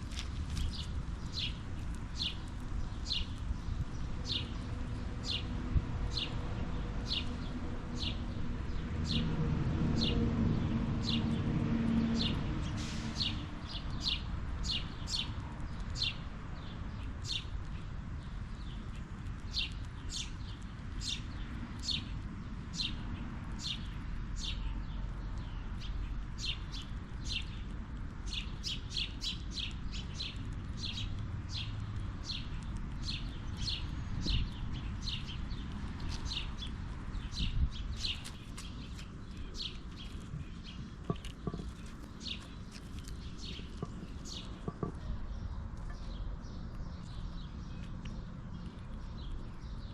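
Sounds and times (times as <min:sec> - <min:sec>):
bird chirping: 0:12.2 - 0:22.2, 0:23.6 - 0:49.9.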